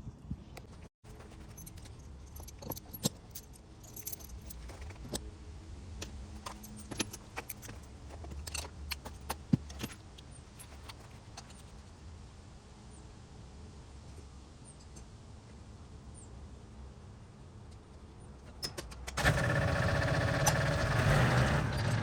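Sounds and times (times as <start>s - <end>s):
metal tools clinking: 0.8s - 5.2s, 6.4s - 11.7s.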